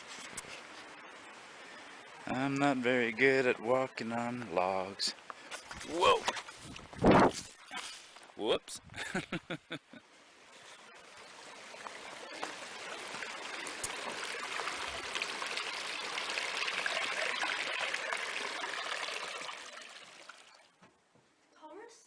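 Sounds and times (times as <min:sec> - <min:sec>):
stream water rushing: 0:10.3 - 0:20.7.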